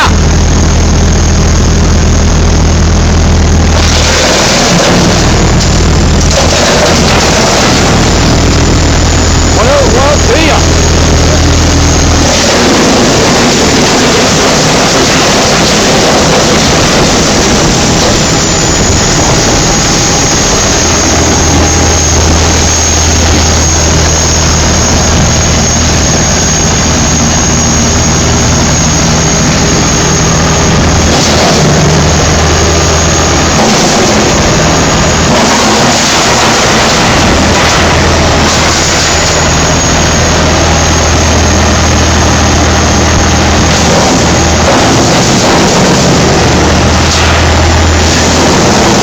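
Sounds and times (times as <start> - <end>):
thin high whine: 0.0 - 49.0
wood chipper running: 0.0 - 49.0.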